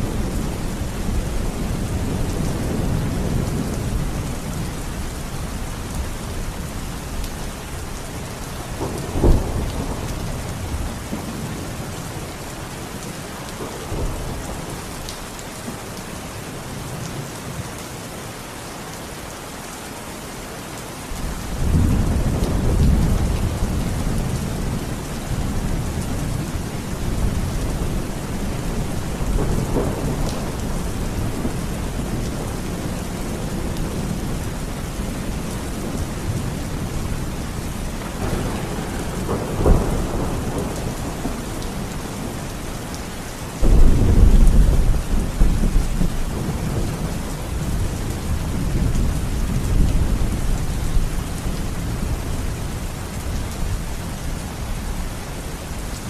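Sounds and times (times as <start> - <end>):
steady rain: 0.0 - 56.0
rolling thunder rumble: 21.2 - 42.9, 43.6 - 52.2
sharp thunderclap: 38.2 - 42.3, 43.6 - 46.9.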